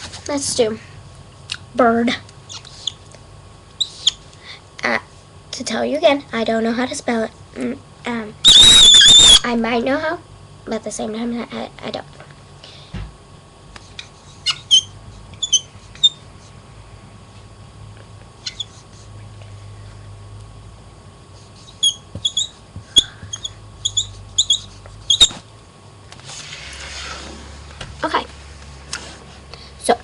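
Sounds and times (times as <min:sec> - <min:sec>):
marker squeaking: 0:02.5 - 0:03.0, 0:03.8 - 0:04.3, 0:08.4 - 0:09.4, 0:14.2 - 0:16.2, 0:18.4 - 0:18.8, 0:21.6 - 0:25.4.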